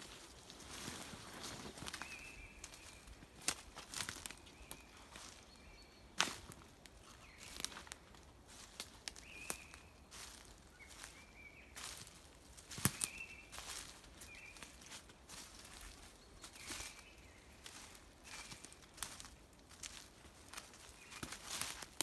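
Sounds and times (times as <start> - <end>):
footsteps crunching on dry leaves: 0.0 - 5.6, 6.2 - 22.0
twig snapping: 12.7 - 13.2.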